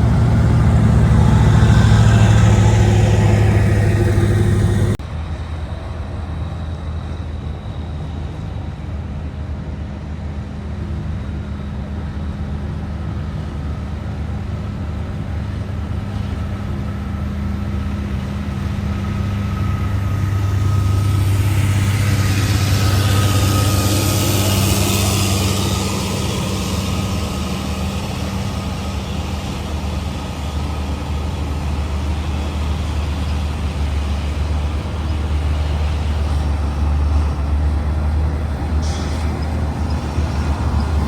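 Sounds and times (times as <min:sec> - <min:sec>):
bulldozer diesel engine running: 0:00.0 - 0:41.0
thin high whine: 0:19.0 - 0:37.7.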